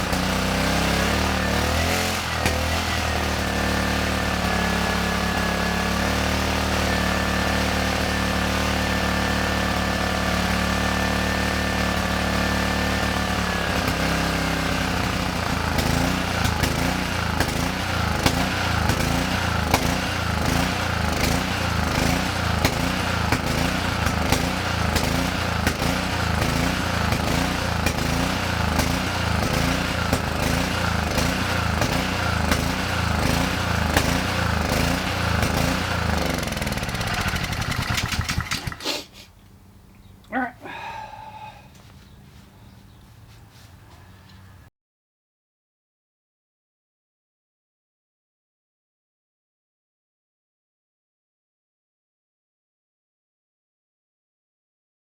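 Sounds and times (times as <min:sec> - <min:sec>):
engine popping: 0:00.0 - 0:06.8, 0:13.0 - 0:39.0
pressure washer engine surging: 0:00.0 - 0:39.2, 0:40.3 - 0:41.6.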